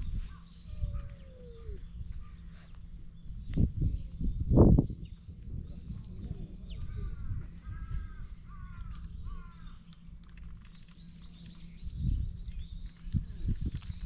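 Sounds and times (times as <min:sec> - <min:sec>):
steady low rumble: 0:00.0 - 0:14.0
crow cawing: 0:06.8 - 0:09.9.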